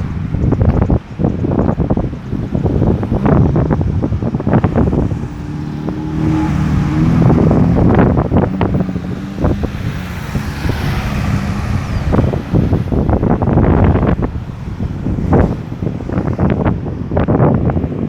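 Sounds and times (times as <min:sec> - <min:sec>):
wind buffeting microphone: 0:00.0 - 0:18.0
vehicle engine passing: 0:02.3 - 0:17.4.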